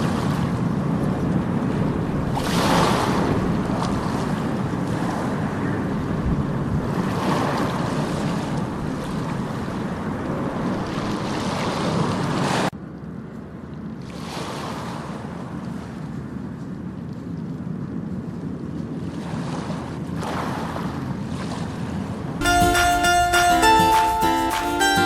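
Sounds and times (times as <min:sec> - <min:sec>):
sea surf washing onto beach: 0:00.0 - 0:12.7
wind buffeting microphone: 0:00.0 - 0:12.7.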